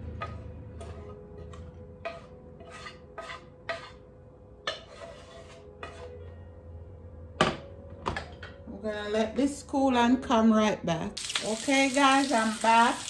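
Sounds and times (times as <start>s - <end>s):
metal utensil scraping a pan: 0.0s - 6.4s.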